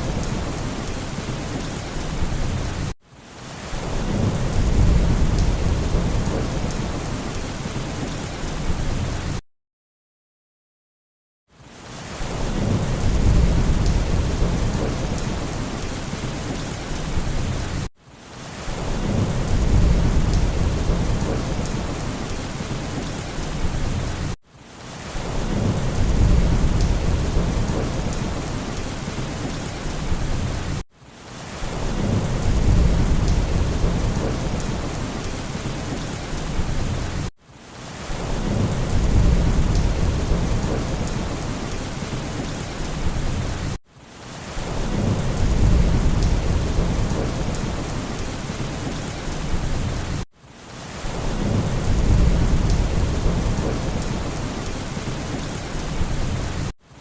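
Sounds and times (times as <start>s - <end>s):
heavy rain: 0.0s - 9.4s, 11.5s - 57.0s
low rumble of thunder: 3.8s - 9.4s, 12.3s - 17.9s, 18.7s - 24.4s, 25.1s - 30.8s, 31.6s - 37.3s, 38.2s - 43.8s, 44.6s - 50.2s, 51.1s - 56.7s.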